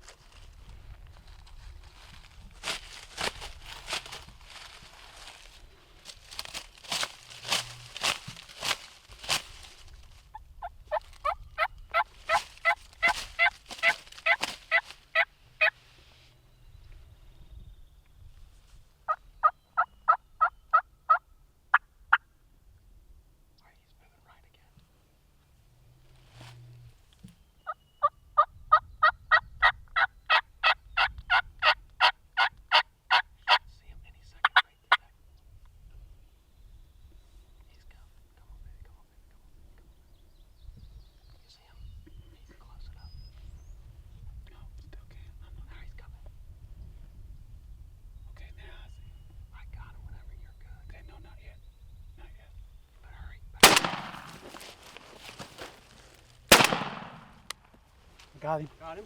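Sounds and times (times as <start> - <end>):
turkey yelping: 10.6 - 15.7
short sharp turkey notes: 56.5 - 57.5.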